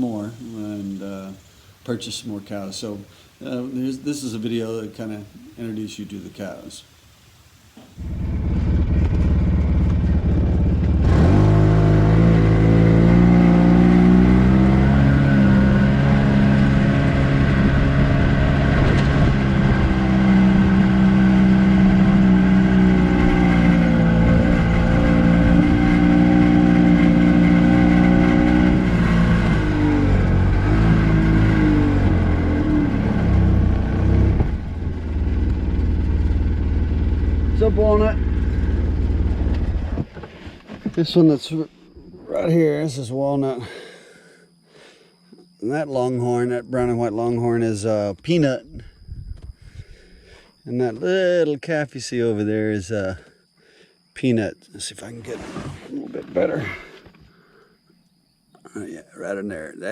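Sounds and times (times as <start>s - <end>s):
vehicle engine rumbling: 7.8s - 44.6s, 48.6s - 51.2s, 55.0s - 57.4s.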